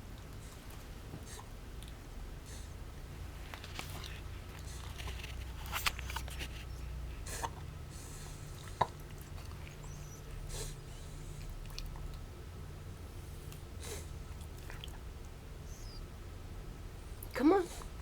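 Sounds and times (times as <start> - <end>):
dog snorting and sniffing: 3.8 - 12.0, 13.3 - 15.0.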